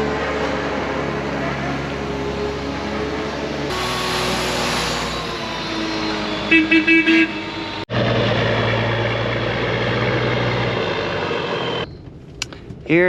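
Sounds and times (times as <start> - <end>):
vehicle horn tooting: 6.5 - 7.6.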